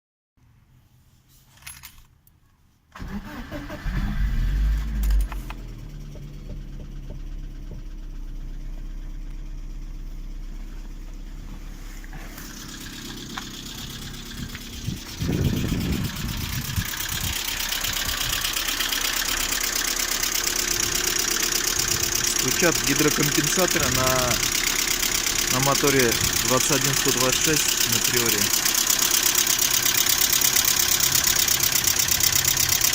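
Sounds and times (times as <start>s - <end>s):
car engine starting and idling: 2.9s - 32.9s.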